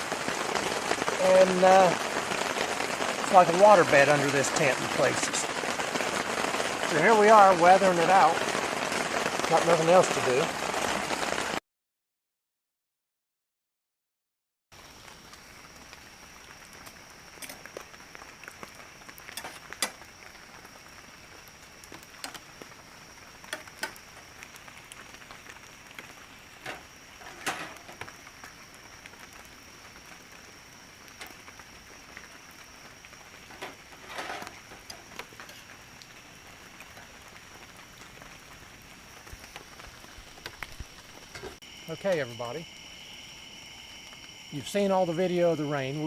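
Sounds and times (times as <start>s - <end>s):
steady rain falling: 0.0s - 11.6s, 14.7s - 46.0s
steady high tone: 44.5s - 46.0s.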